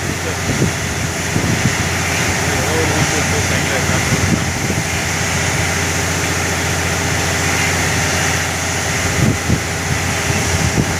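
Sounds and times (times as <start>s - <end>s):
heavy engine running: 0.0s - 10.9s
water gushing from borewell: 0.0s - 10.9s.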